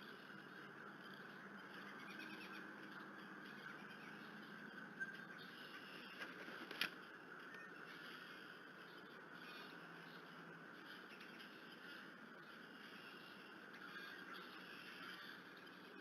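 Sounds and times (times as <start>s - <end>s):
sharp clicks: 6.2s - 7.6s.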